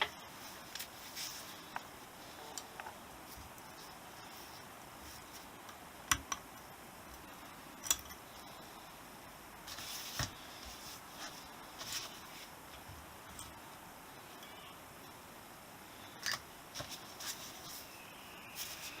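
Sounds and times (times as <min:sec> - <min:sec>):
rustle: 0:00.1 - 0:05.6, 0:09.6 - 0:14.8, 0:16.0 - 0:19.0.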